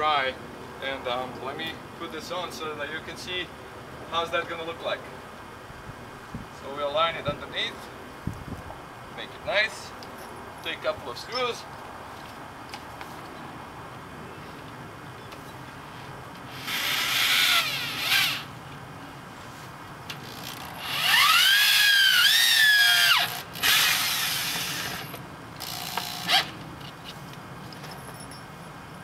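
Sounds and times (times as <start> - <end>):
power drill motor whine: 16.5 - 18.5, 20.2 - 26.5.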